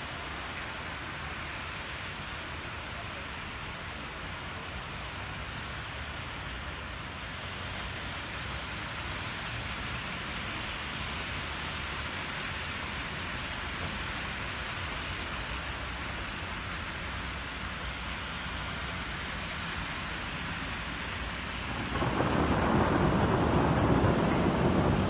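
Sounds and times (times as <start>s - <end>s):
rain hissing: 0.0s - 25.0s
hailstones ticking: 21.4s - 25.0s.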